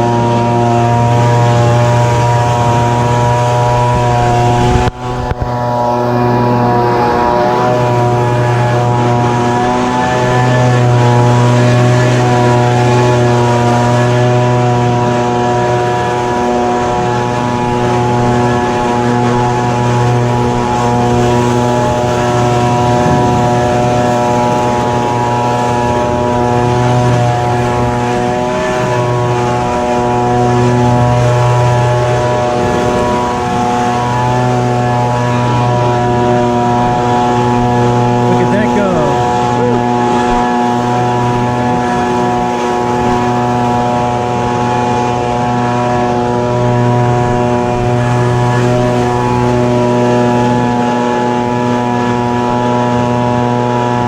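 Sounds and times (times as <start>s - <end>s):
leaf blower engine running: 0.0s - 54.0s
air rushing from blower tube: 22.0s - 25.5s.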